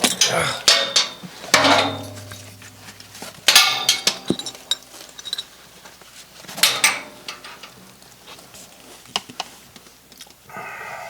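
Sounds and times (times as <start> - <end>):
loud metallic clanks: 0.0 - 4.8, 6.6 - 7.8
light metallic clinks: 0.0 - 5.6.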